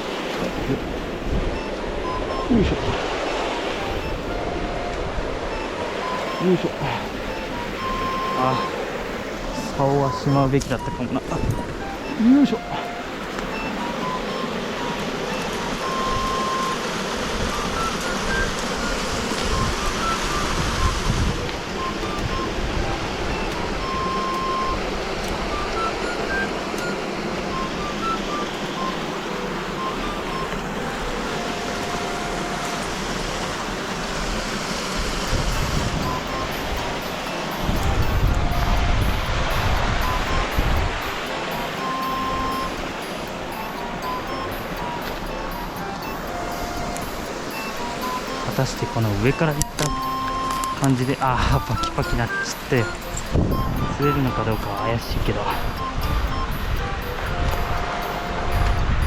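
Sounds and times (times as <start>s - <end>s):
wind buffeting microphone: 0.0s - 6.1s, 9.0s - 12.5s, 17.0s - 26.6s, 29.1s - 41.5s, 51.4s - 54.1s, 54.8s - 59.0s
mountain stream rushing: 0.0s - 59.0s
simple melody background music: 0.0s - 59.0s.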